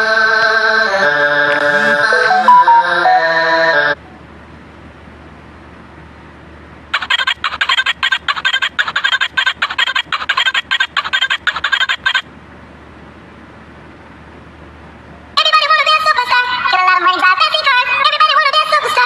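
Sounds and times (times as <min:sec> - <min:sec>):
sped-up warbling chatter: 0:07.0 - 0:12.2.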